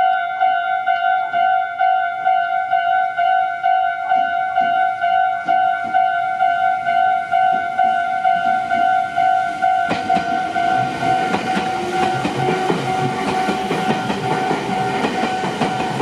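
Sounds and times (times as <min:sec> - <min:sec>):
level crossing bell ringing: 0:00.0 - 0:16.0
train wheels clattering: 0:07.4 - 0:16.0.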